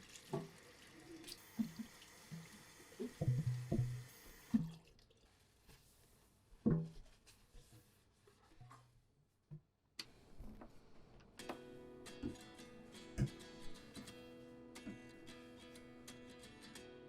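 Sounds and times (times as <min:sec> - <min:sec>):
tap running into sink: 0:00.1 - 0:00.6, 0:01.3 - 0:04.8.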